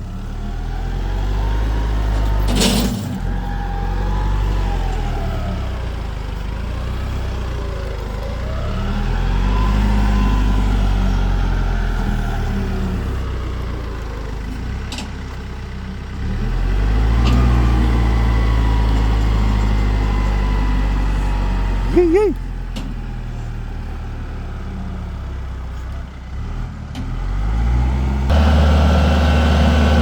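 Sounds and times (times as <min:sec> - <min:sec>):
vehicle engine running: 0:27.8 - 0:30.0.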